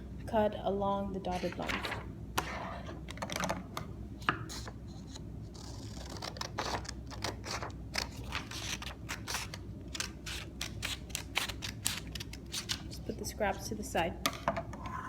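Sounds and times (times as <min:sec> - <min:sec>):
scissors snipping paper: 0:05.6 - 0:12.8.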